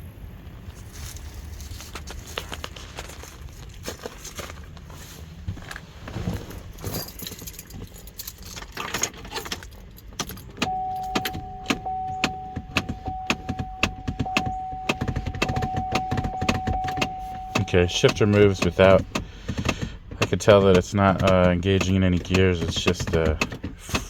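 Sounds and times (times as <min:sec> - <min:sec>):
keys jangling: 0:06.5 - 0:11.9
high electronic warning tone: 0:10.6 - 0:19.0
sharp clicks: 0:10.6 - 0:24.0.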